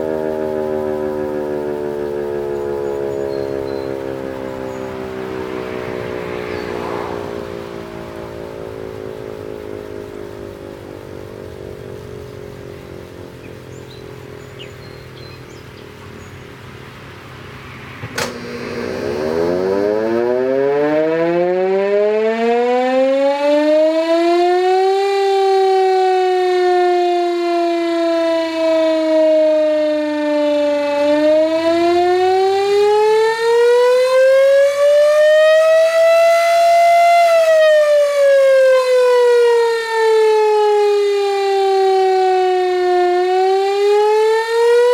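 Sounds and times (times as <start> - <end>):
electric siren wailing: 0.0 - 16.9, 17.5 - 44.9
sharp click: 18.0 - 18.6.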